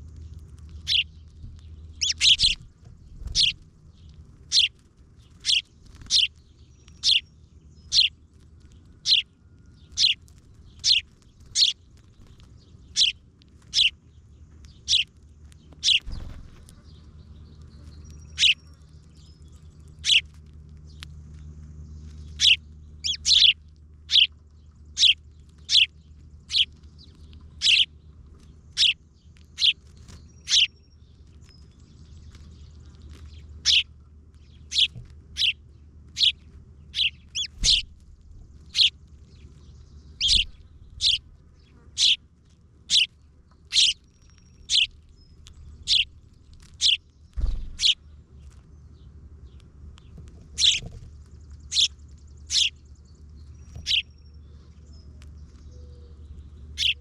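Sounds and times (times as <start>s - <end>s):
bird chirping: 0.0s - 57.0s
steady low hum: 0.0s - 57.0s
dull low thumps: 40.2s - 41.2s.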